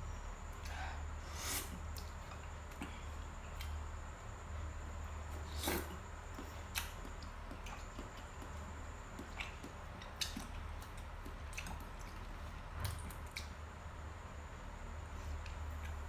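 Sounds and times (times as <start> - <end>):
small mouth clicks: 5.6 - 8.6
wet chewing and mouth smacks: 5.6 - 13.6.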